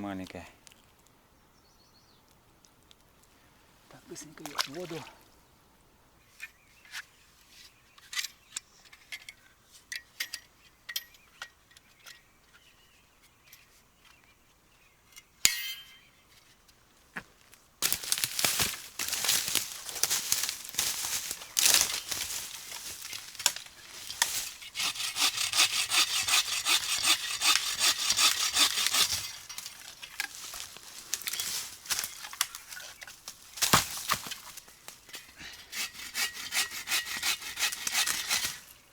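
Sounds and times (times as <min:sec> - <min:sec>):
hand saw cutting wood: 0:24.1 - 0:29.8, 0:35.4 - 0:38.7.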